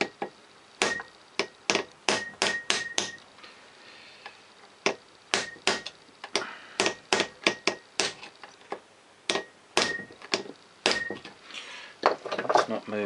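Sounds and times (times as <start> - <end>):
hammer tapping metal pin: 0.0 - 3.2, 4.8 - 8.2, 9.3 - 11.3.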